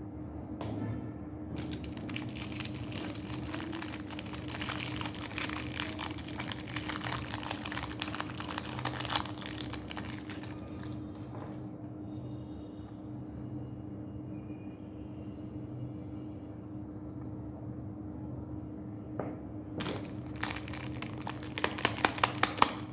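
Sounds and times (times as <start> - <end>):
plastic wrapper crinkling: 1.6 - 11.6, 19.8 - 22.9.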